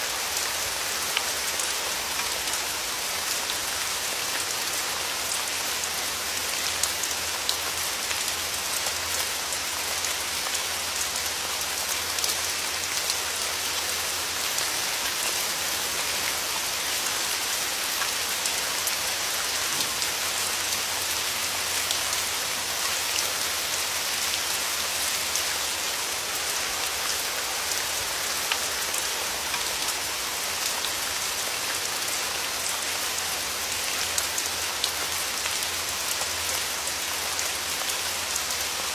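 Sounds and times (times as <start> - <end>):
rain hissing: 12.4 - 32.4.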